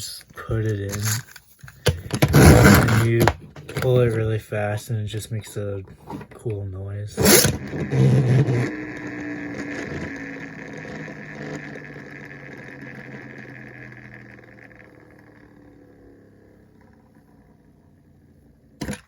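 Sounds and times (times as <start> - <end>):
toy flywheel whirring: 7.2 - 19.0.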